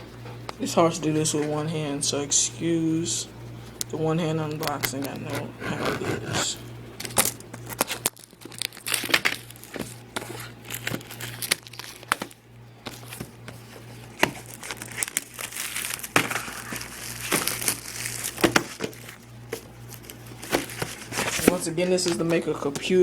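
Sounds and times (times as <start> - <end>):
packaging crinkling and tearing: 4.6 - 22.2
sharp clicks and scrapes: 4.9 - 8.1.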